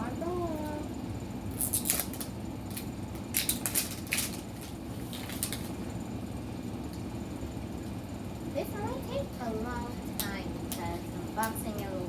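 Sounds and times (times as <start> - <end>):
plastic wrapping crinkling and tearing: 1.6 - 5.8.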